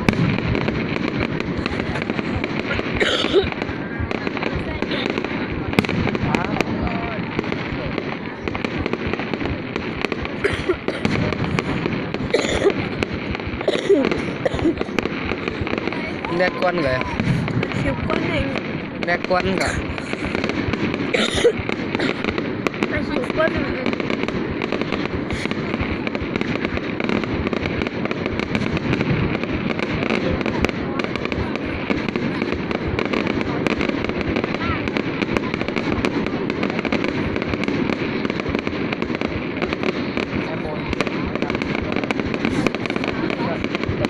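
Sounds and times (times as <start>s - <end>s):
continuous rumble: 0.0s - 44.0s
fireworks popping and crackling: 0.0s - 44.0s.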